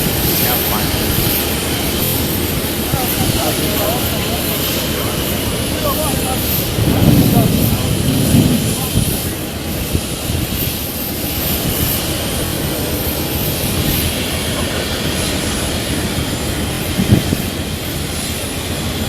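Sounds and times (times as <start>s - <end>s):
airliner engines in cabin: 0.0s - 19.0s.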